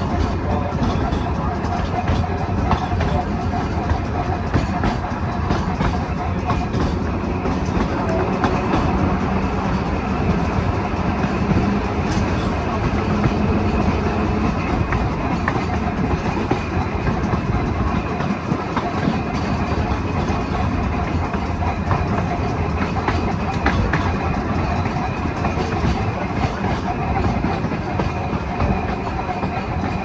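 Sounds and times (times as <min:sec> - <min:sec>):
streetcar wheels rumbling on rails: 0:00.0 - 0:30.0.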